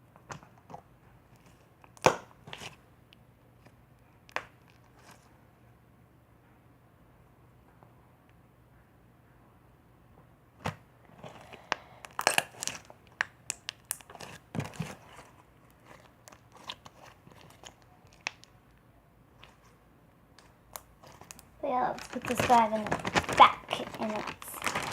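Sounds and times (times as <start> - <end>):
plastic bag crinkling: 11.2 - 18.5, 20.7 - 24.9.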